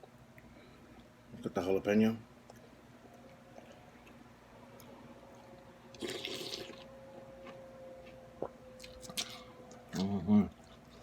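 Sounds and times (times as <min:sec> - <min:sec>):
faint steady hum: 0:00.0 - 0:11.0
wet slurp of noodle soup: 0:06.0 - 0:06.8.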